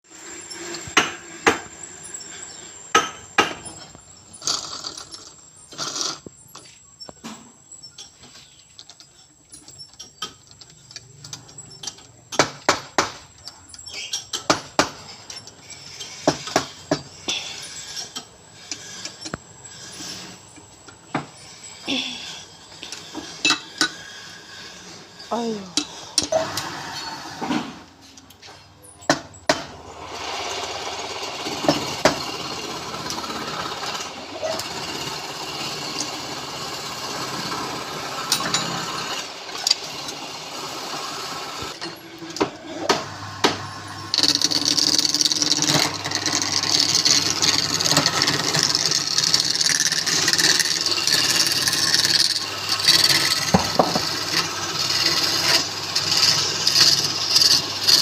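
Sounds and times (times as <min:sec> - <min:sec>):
turning tool scraping wood: 0:00.1 - 0:27.9, 0:29.6 - 0:58.0
woodturning lathe running: 0:29.5 - 0:58.0.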